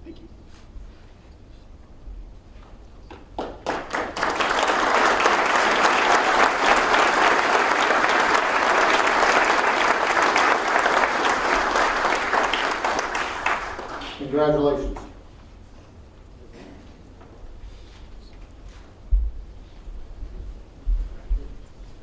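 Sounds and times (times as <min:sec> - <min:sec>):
audience applauding: 0:03.2 - 0:14.6.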